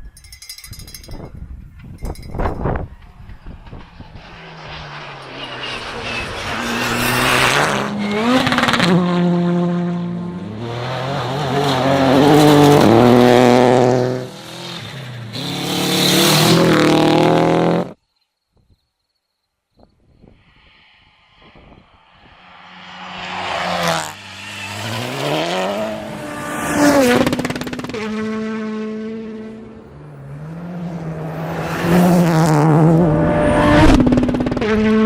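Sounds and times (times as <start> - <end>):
rally car engine revving: 3.6 - 18.0, 22.4 - 35.0.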